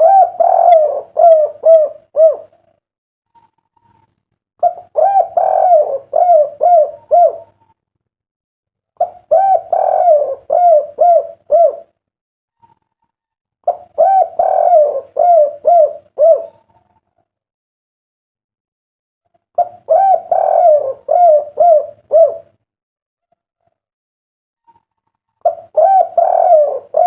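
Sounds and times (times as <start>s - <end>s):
dove cooing: 0.0s - 2.7s, 4.6s - 7.8s, 9.0s - 12.0s, 13.6s - 17.2s, 19.6s - 22.6s, 25.4s - 27.0s.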